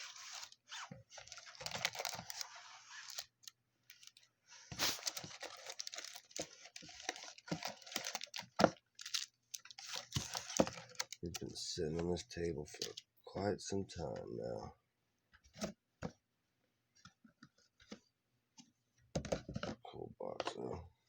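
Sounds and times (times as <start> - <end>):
card packs rustling and crinkling: 0.0 - 11.5.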